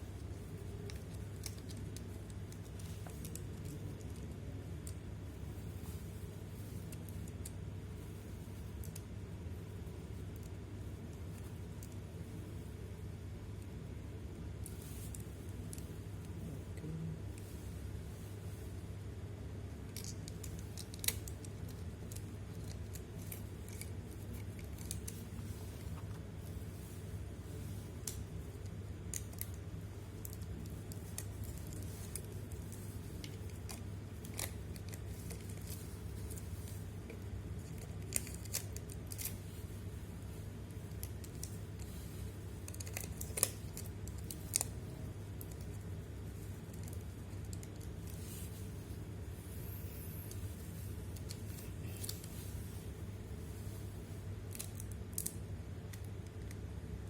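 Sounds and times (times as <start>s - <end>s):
steady low hum: 0.0s - 57.0s
small sharp clicks and snips: 19.9s - 25.2s, 42.6s - 44.8s, 54.5s - 56.7s.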